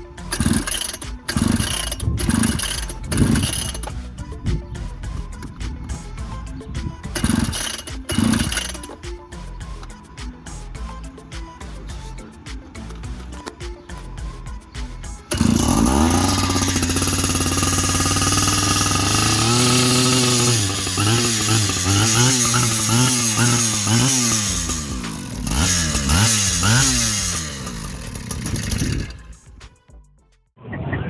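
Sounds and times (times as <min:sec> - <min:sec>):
concrete saw engine revving: 0:00.0 - 0:04.3, 0:06.0 - 0:09.0, 0:15.1 - 0:29.6.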